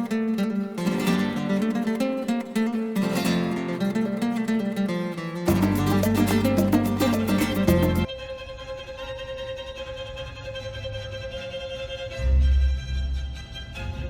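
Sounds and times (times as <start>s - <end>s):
plucked acoustic guitar music: 0.0s - 8.1s
deep bass: 5.5s - 8.1s.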